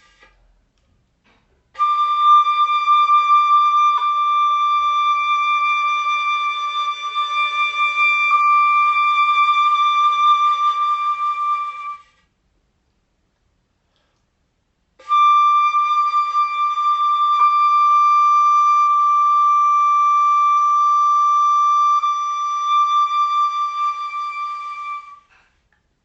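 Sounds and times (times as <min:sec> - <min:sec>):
high flute note: 0:01.8 - 0:12.2, 0:15.0 - 0:25.4.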